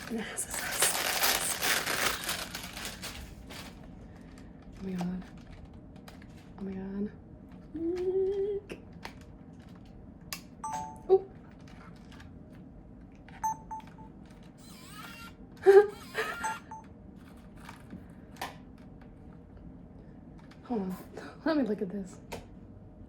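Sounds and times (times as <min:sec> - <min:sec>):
short electronic beeps: 0:13.4 - 0:15.3, 0:15.9 - 0:16.9.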